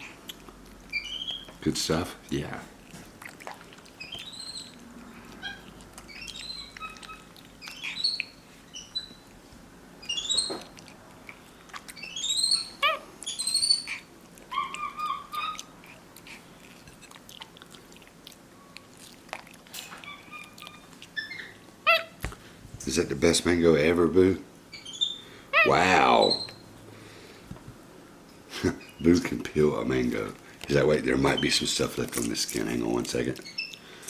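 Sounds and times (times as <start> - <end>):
wet chewing and smacking: 0.0 - 22.6, 30.2 - 34.0
monkey chirping: 0.9 - 1.6, 4.0 - 4.8, 5.4 - 9.2, 10.0 - 10.8, 11.9 - 15.8, 20.0 - 22.2, 24.7 - 26.6.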